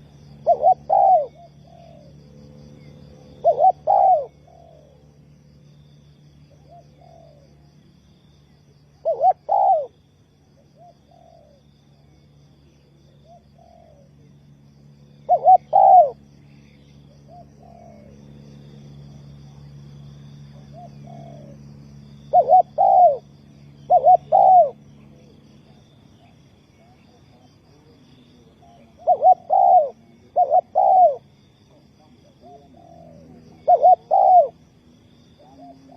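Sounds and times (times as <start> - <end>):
dove cooing: 0.0 - 5.2, 6.4 - 7.6, 8.9 - 10.0, 10.7 - 11.7, 12.9 - 14.3, 15.2 - 18.3, 20.5 - 34.7, 35.3 - 35.9
faint low hum: 0.0 - 35.9.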